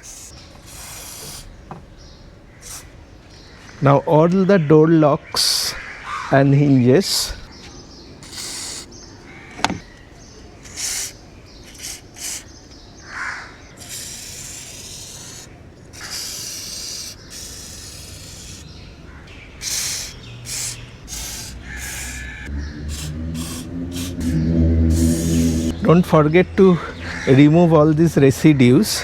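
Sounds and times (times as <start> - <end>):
aerosol spray hissing: 0.0 - 1.6, 2.6 - 2.9, 8.2 - 9.0, 10.6 - 12.5, 13.8 - 18.7, 19.6 - 25.8.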